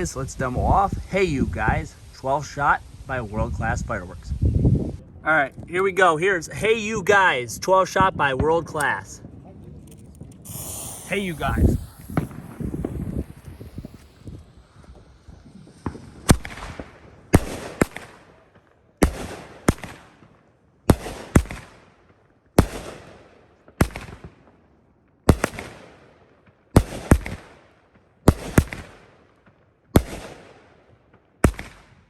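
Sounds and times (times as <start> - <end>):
fireworks hiss: 0.0 - 5.0, 10.1 - 20.3, 26.8 - 27.7, 28.3 - 29.1, 31.4 - 32.0
fireworks reports: 0.0 - 21.8.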